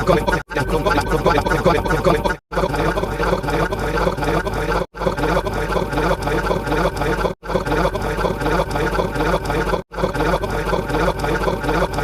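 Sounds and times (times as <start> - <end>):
voice-like sounds: 0.0 - 12.0.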